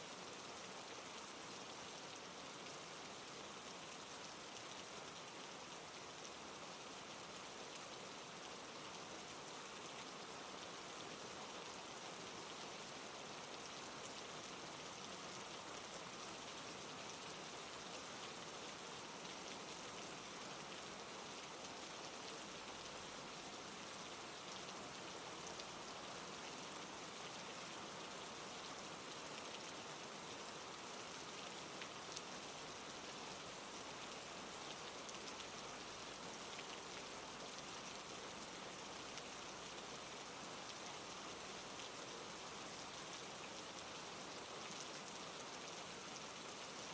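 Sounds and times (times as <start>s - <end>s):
steady rain falling: 0.0s - 46.9s.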